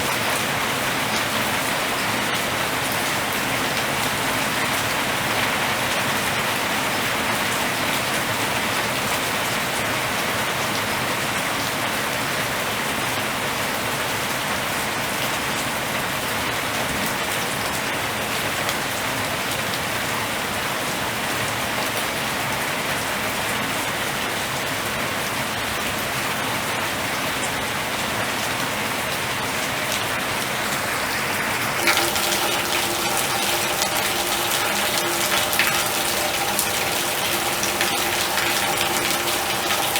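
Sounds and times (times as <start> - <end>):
rain pouring: 0.0 - 9.9, 27.8 - 39.9
steady tones: 31.8 - 39.9.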